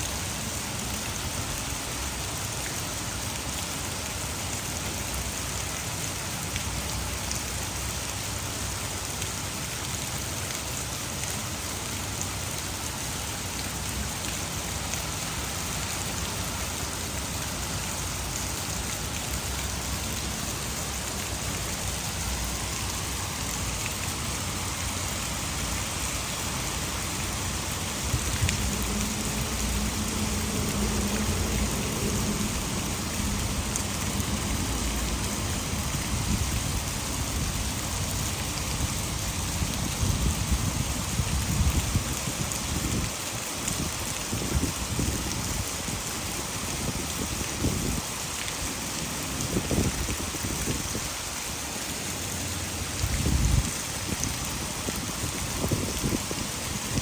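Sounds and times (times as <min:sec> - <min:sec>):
heavy rain pouring: 0:00.0 - 0:57.0
water falling over a dam: 0:00.0 - 0:57.0
low rumble: 0:28.0 - 0:36.6.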